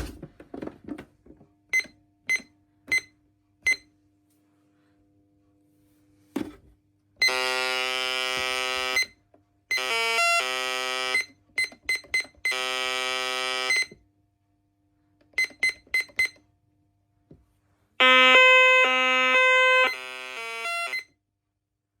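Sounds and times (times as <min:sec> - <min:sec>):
long buzzing alarm tones: 0:07.2 - 0:09.1, 0:09.7 - 0:11.3, 0:12.5 - 0:14.0, 0:18.0 - 0:21.1
warbling alarm tone: 0:18.0 - 0:21.0
short alarm beeps: 0:18.0 - 0:21.1.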